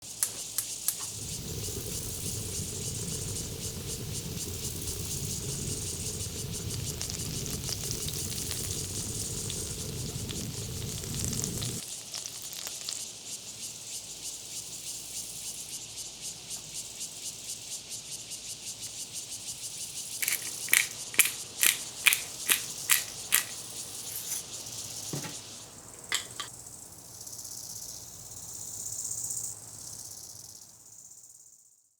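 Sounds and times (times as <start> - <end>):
egg sizzling in oil: 0.1 - 14.0, 20.2 - 26.5.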